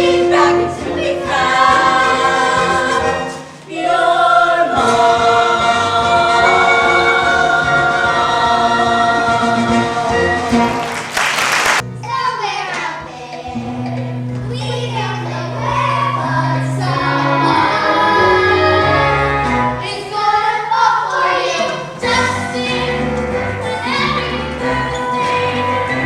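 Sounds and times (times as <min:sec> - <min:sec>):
instrumental accompaniment: 0:00.0 - 0:03.7, 0:04.7 - 0:11.2, 0:11.8 - 0:19.9
chorus singing in unison: 0:00.0 - 0:11.7, 0:15.0 - 0:26.0.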